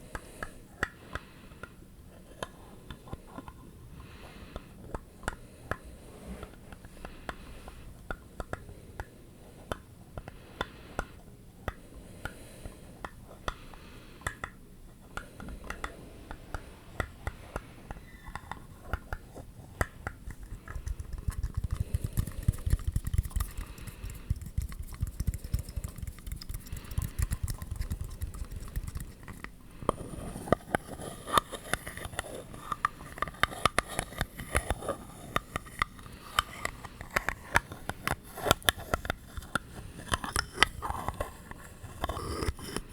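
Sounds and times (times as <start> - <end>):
fingernail tapping: 15.2 - 41.3
fingernail scratching: 20.2 - 42.9.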